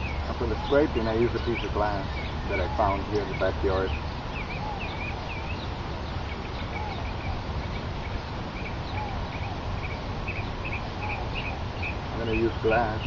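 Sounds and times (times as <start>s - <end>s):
birds chirping: 0.0s - 13.0s
low background rumble: 0.0s - 13.0s
lower arching bird call: 0.0s - 13.0s.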